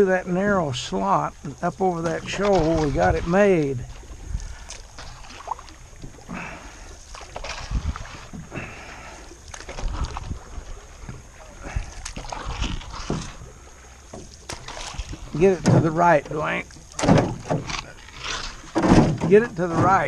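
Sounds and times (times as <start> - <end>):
water sloshing and splashing: 0.0 - 20.0
knocks on boat: 14.1 - 17.8, 18.7 - 20.0.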